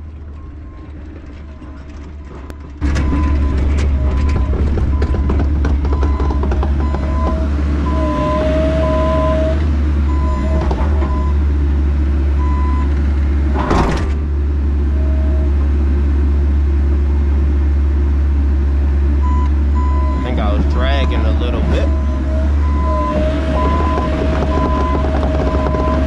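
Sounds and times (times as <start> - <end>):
excavator diesel engine running: 0.0 - 26.0
travel alarm beeping: 3.0 - 9.5, 19.2 - 26.0.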